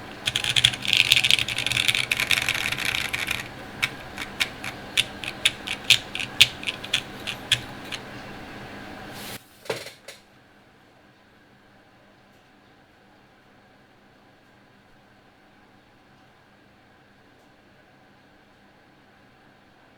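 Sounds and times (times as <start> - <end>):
mechanical keyboard keystrokes: 0.0 - 8.3.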